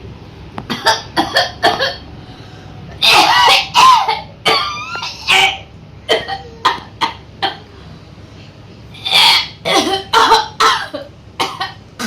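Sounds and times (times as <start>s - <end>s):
person forced coughing: 0.7s - 2.0s, 3.0s - 7.6s, 9.0s - 12.0s
person clearing throat: 9.0s - 12.0s.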